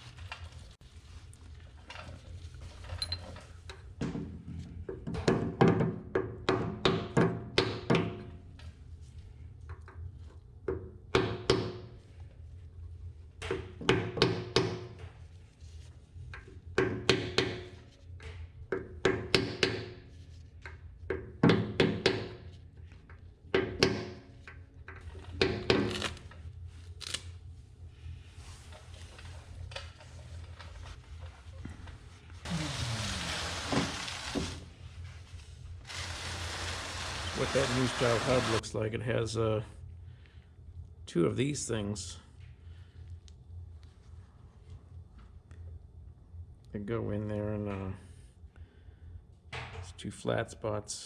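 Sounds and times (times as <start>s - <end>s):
low steady hum: 22.3s - 51.0s.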